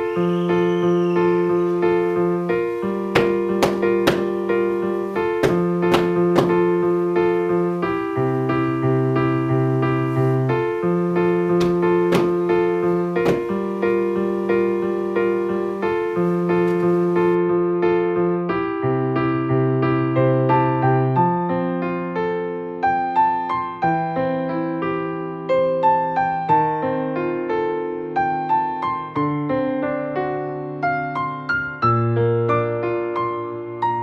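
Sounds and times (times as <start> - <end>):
electric piano music: 0.0 - 34.0.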